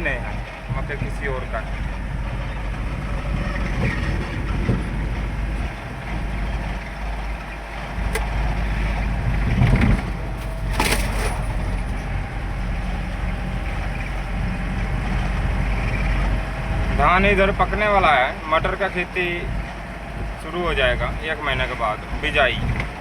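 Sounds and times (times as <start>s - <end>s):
vehicle bump: 0.0s - 23.0s
vehicle engine and road rumble: 0.0s - 23.0s
brief rattle: 9.6s - 12.1s.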